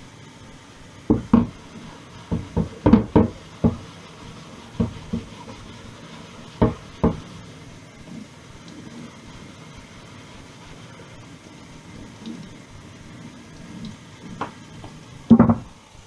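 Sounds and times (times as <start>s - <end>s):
low hiss: 0.0s - 16.0s
kitchen items knocking: 1.1s - 7.3s, 15.3s - 15.7s.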